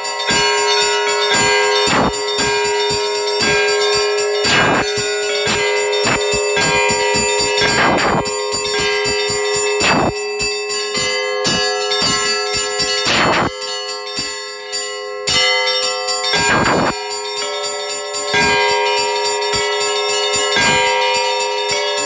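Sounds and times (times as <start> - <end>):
louder bell stroke: 0.0 - 13.4
church bells pealing: 0.0 - 22.0.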